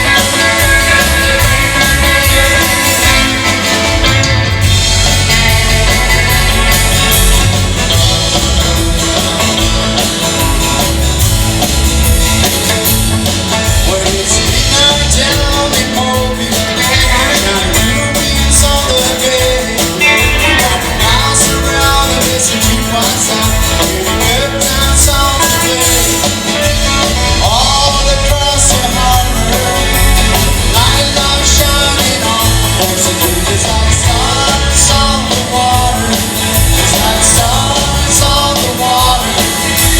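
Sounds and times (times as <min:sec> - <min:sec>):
country-rock band with guitar: 0:00.0 - 0:39.9.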